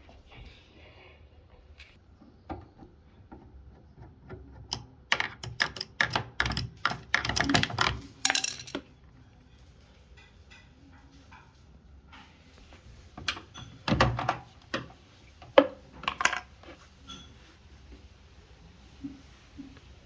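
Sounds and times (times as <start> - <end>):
hard objects clicking and clattering: 4.6 - 9.0, 13.3 - 16.8.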